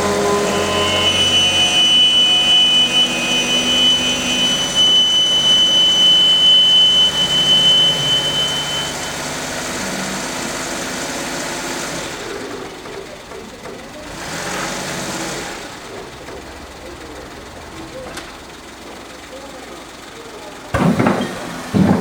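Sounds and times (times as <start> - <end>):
low running drone: 0.0 - 11.7
drivetrain high whine: 0.0 - 11.9.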